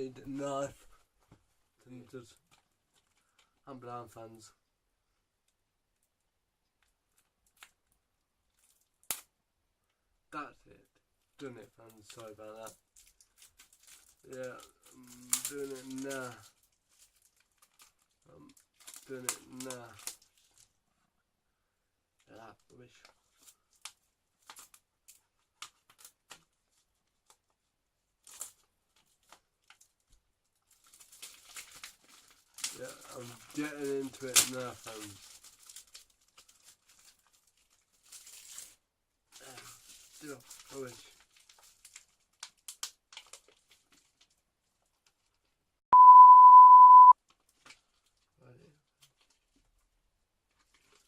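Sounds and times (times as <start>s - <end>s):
plastic shrink-wrap tearing: 11.9s - 20.7s, 30.6s - 38.8s, 39.4s - 45.3s
packaging rustling: 12.0s - 20.7s, 30.6s - 38.8s, 39.4s - 45.4s, 50.5s - 51.0s
censor bleep: 45.9s - 47.2s.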